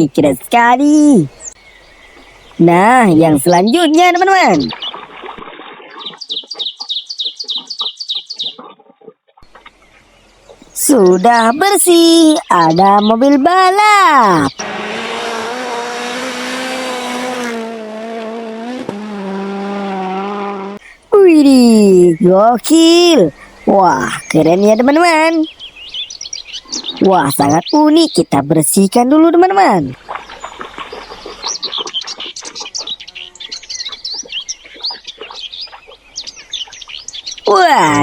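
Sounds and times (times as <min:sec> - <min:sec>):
small birds chirping: 0:00.0 - 0:17.6, 0:19.6 - 0:38.0
race car engine revving: 0:14.5 - 0:20.8.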